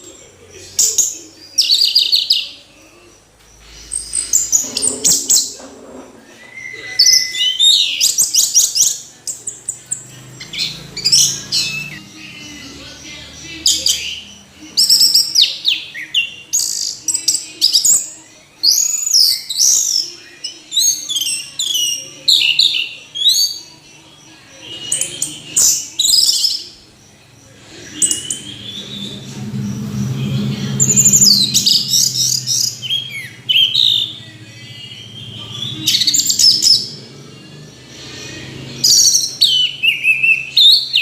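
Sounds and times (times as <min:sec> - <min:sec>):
thrush singing: 0:00.0 - 0:41.0.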